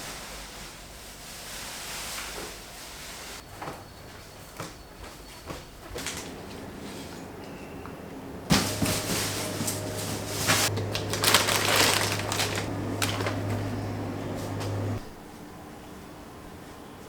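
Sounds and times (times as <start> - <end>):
low electric hum: 6.1 - 16.2
crackling and clattering: 8.5 - 15.1.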